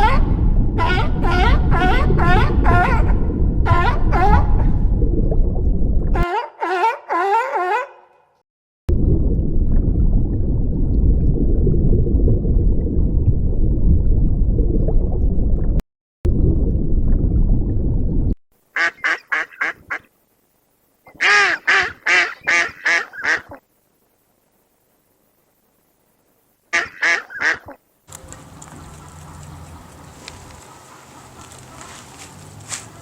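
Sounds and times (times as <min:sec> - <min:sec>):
low rumbling noise: 0:00.0 - 0:06.2, 0:08.9 - 0:18.4
duck quacks: 0:18.8 - 0:20.0, 0:21.2 - 0:23.6, 0:26.7 - 0:33.0.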